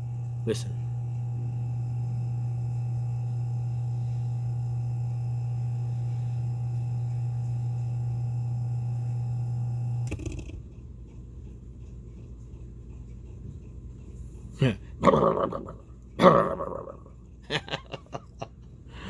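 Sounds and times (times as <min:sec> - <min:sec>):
speaker motor humming and whining: 0:00.0 - 0:10.8.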